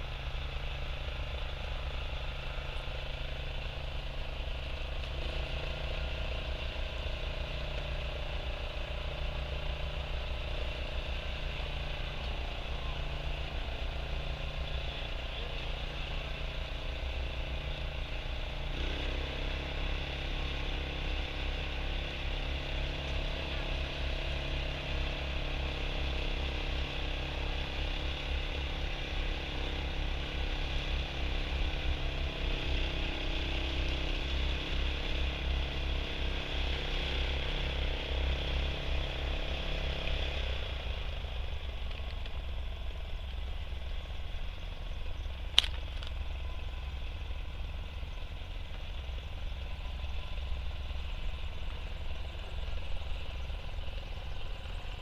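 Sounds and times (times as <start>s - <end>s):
sharp click: 45.5s - 46.2s.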